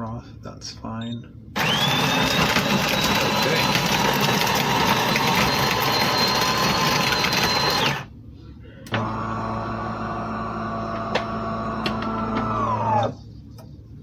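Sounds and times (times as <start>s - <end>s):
low machine hum: 0.0s - 14.0s
coffee grinder whirring: 1.6s - 8.1s, 9.0s - 13.2s.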